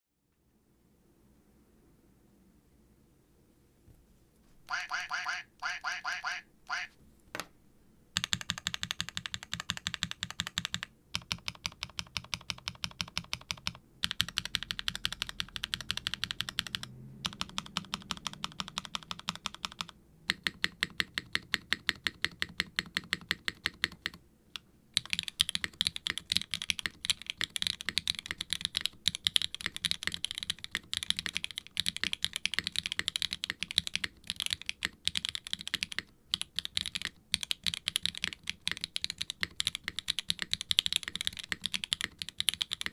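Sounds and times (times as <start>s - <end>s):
typing on mechanical keyboard: 8.2s - 24.2s, 25.0s - 42.9s.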